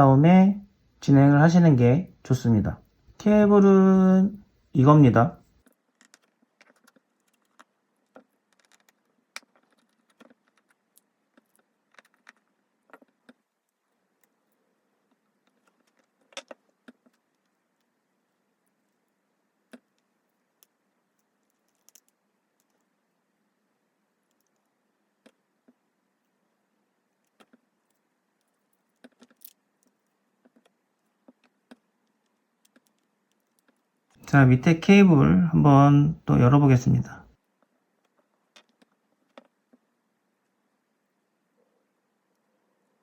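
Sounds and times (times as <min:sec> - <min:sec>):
small tools clicking on phone: 0:05.6 - 0:14.4, 0:19.7 - 0:22.9, 0:27.2 - 0:33.8, 0:38.0 - 0:39.6.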